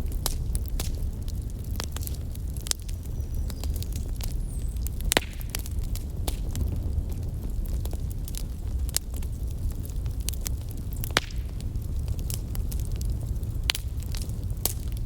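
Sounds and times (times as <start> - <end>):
wood fire crackling: 0.0 - 15.0
sharp pops and snaps: 5.0 - 6.6, 10.3 - 11.6.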